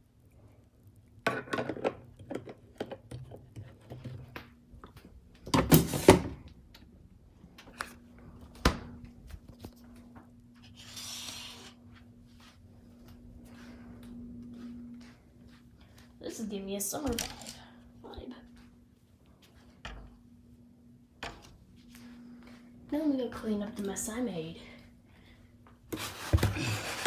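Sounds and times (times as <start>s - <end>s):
kitchen items knocking and clinking: 1.3s - 3.3s
steady low hum: 3.8s - 27.0s
kitchen items clattering: 17.1s - 17.7s, 26.0s - 27.0s.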